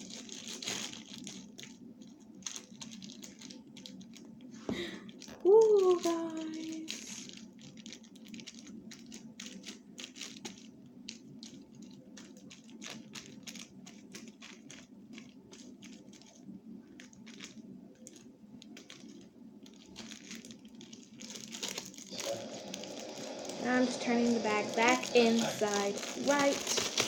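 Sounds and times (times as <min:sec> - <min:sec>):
plastic bag crinkling: 0:00.0 - 0:27.0.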